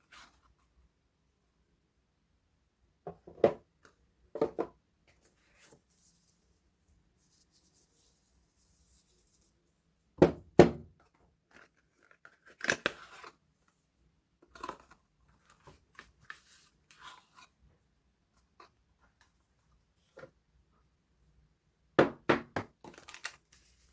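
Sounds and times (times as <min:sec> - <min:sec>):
packaging tearing and crinkling: 0:22.8 - 0:23.7.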